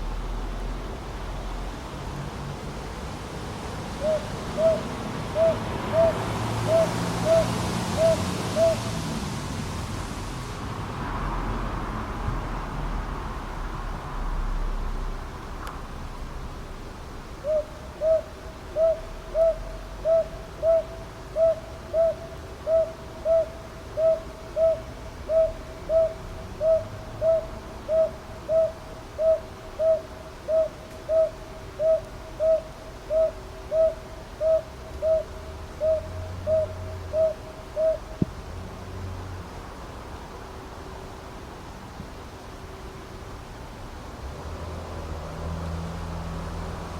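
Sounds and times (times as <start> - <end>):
owl hooting softly: 4.0 - 9.0, 17.4 - 38.2.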